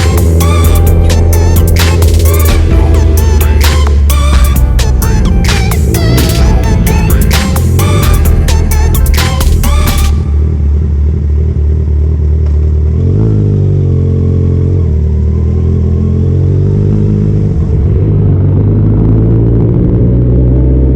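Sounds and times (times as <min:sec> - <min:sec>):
electronic music: 0:00.0 - 0:11.7
motorcycle engine revving: 0:00.0 - 0:20.9.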